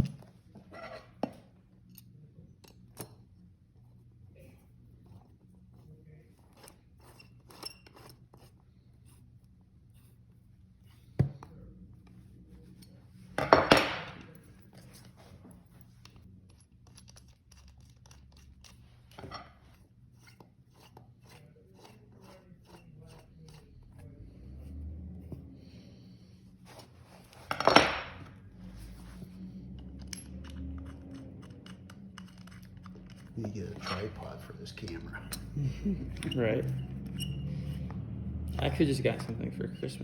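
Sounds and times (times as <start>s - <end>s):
metal parts clicking and clinking: 16.0s - 19.5s, 29.8s - 34.2s.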